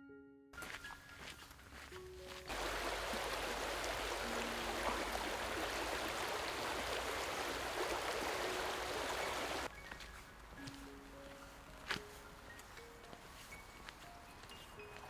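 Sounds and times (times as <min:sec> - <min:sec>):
stream water rushing: 0:02.5 - 0:09.7.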